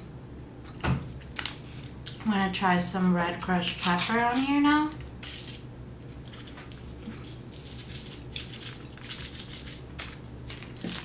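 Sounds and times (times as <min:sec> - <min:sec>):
pepper flakes pattering on pizza: 0:03.6 - 0:11.0.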